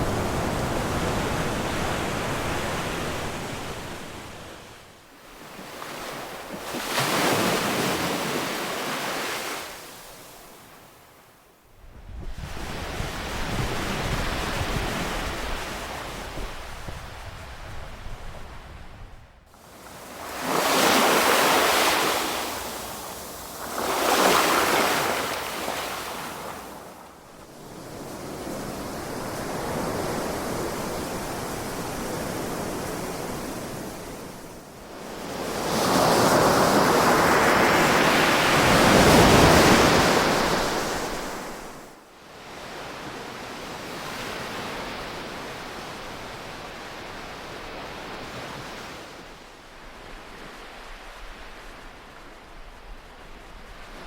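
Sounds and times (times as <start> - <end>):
ocean waves breaking: 0.0 - 10.6, 19.6 - 26.9.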